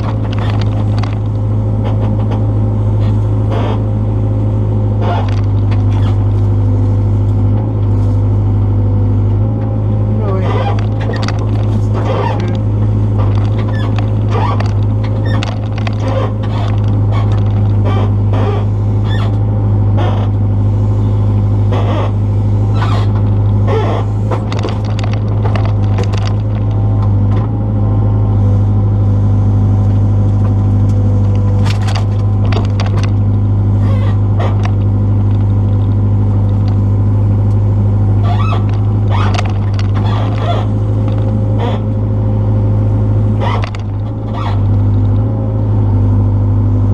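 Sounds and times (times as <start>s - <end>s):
knocks scrapes and squeals of digging: 0.0s - 4.0s, 4.9s - 7.2s, 10.3s - 27.6s, 31.2s - 36.9s, 38.1s - 42.1s, 43.3s - 45.4s
excavator diesel engine running: 0.0s - 46.9s.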